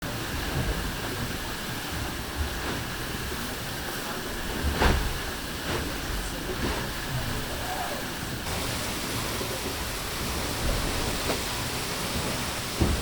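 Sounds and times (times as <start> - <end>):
water rushing: 0.9 - 13.0
wind noise: 8.4 - 13.0
loud thump: 12.8 - 13.0.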